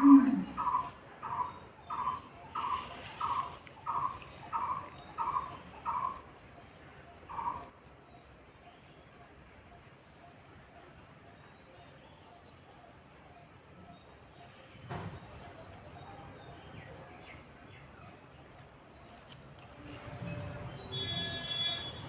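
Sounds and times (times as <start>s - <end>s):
high-pitched insect drone: 19.7s - 22.0s.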